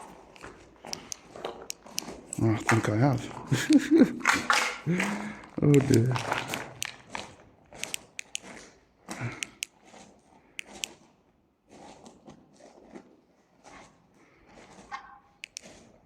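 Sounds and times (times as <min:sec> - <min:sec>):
torch clicks and handling: 0:00.0 - 0:03.2, 0:04.2 - 0:08.6, 0:09.2 - 0:09.8, 0:10.6 - 0:11.0, 0:15.4 - 0:15.8.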